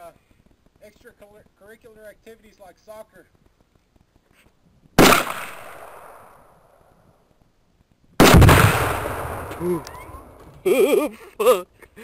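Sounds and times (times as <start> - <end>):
explosion with rolling rumble: 5.0 - 6.6, 8.2 - 10.7
rifle shot echoing: 5.0 - 6.6, 8.2 - 10.4.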